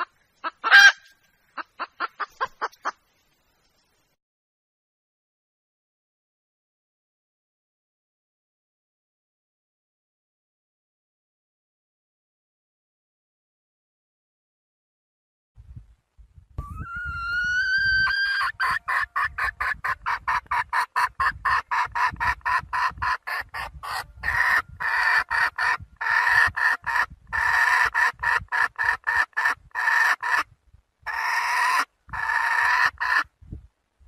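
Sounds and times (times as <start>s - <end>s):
hen calling and clucking: 0.0s - 3.1s, 16.6s - 33.3s.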